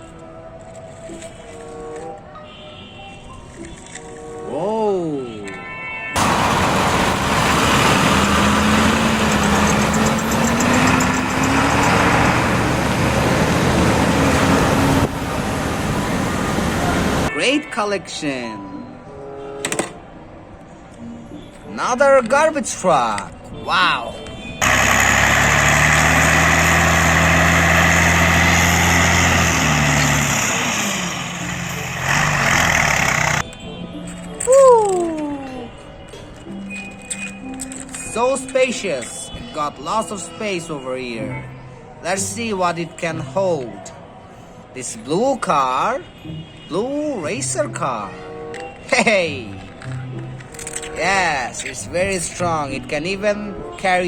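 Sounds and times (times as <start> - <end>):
vehicle engine running: 6.2 - 17.3, 24.6 - 33.4.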